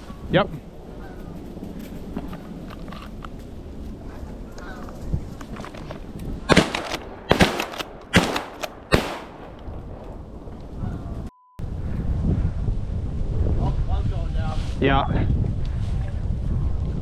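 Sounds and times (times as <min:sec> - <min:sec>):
shotgun shots: 0:06.5 - 0:09.6.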